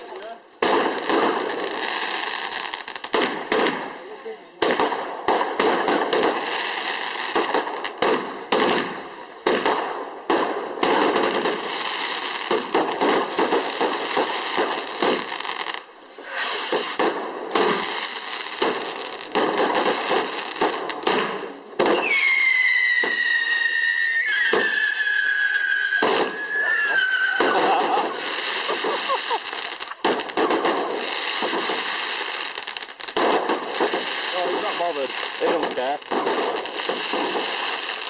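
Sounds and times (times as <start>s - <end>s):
fireworks crackling and banging: 0.0s - 38.0s
shrill falling whistle: 22.0s - 27.5s.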